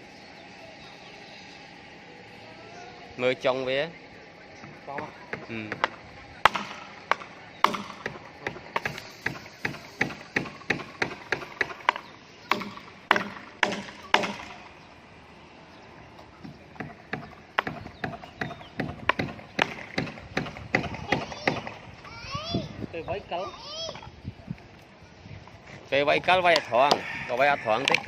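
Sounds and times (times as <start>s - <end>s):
hammer striking nails into wood: 5.0s - 14.6s, 16.8s - 21.8s.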